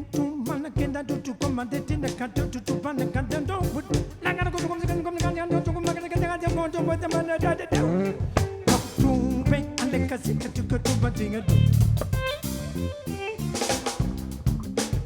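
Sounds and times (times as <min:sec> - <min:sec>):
bass notes: 0:00.0 - 0:15.0
drum hits: 0:00.8 - 0:09.9, 0:10.5 - 0:12.5, 0:13.6 - 0:15.0.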